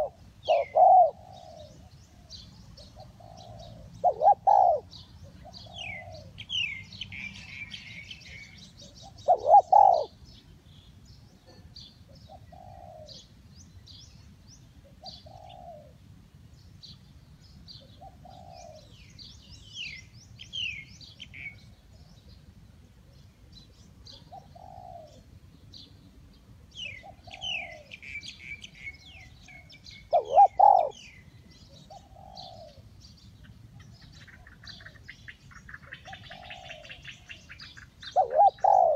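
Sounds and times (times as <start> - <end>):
dove cooing: 0.0 - 10.2, 11.4 - 13.3, 14.9 - 16.0, 17.8 - 19.1, 24.0 - 25.3, 26.7 - 32.9, 33.9 - 38.9
small birds chirping: 0.0 - 15.9, 16.5 - 38.9.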